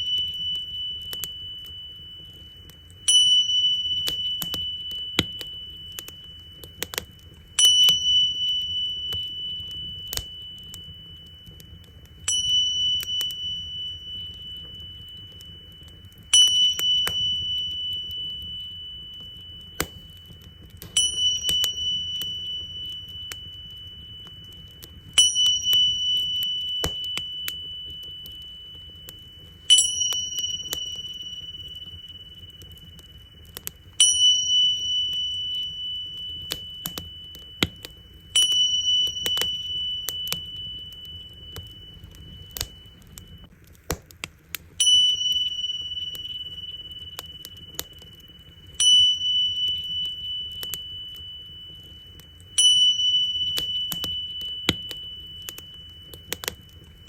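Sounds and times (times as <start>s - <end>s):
small cymbals ringing: 0.0s - 43.6s, 44.7s - 57.0s
wood fire crackling and popping: 0.0s - 57.0s.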